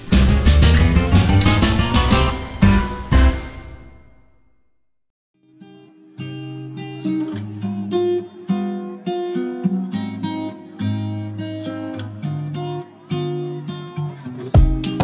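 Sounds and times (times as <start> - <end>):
acoustic guitar melody: 0.0 - 4.2, 5.4 - 15.0
loud percussive hits: 0.0 - 4.4.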